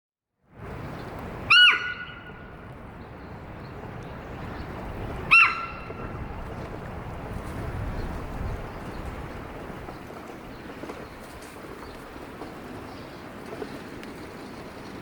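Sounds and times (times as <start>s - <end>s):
deer alarm shrieks: 1.5s - 2.4s, 5.3s - 5.9s.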